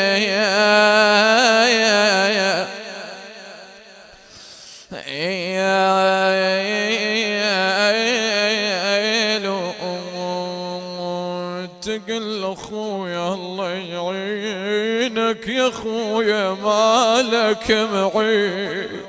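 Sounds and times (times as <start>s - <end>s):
man chanting a lament: 0.0s - 19.0s.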